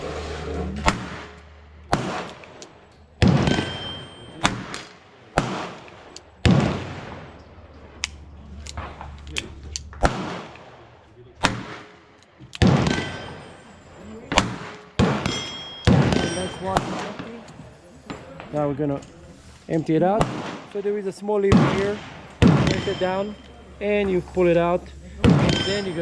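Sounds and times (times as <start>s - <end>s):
low hum: 0.0s - 11.4s
revolver gunshots echoing: 0.8s - 8.2s, 10.0s - 17.5s, 20.1s - 24.6s, 25.2s - 26.0s.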